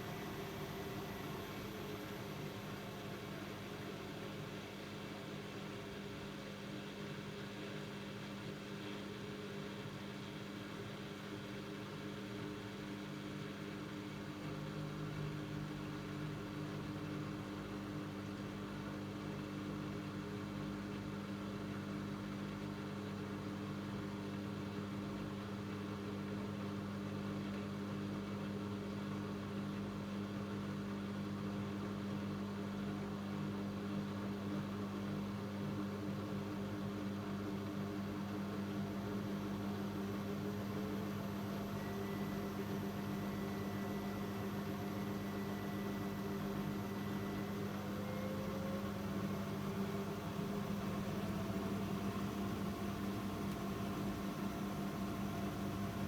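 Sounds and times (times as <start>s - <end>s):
washing machine humming: 0.0s - 7.2s, 37.6s - 56.0s.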